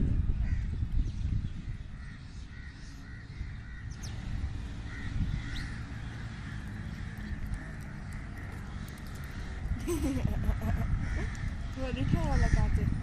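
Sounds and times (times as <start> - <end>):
steady low rumble: 0.0 - 13.0
small birds chirping: 0.6 - 13.0
crows cawing: 2.0 - 4.1, 4.8 - 13.0.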